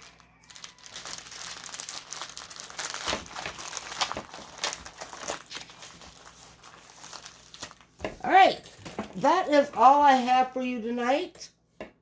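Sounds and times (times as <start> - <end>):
plastic packaging crinkling: 0.0 - 8.0.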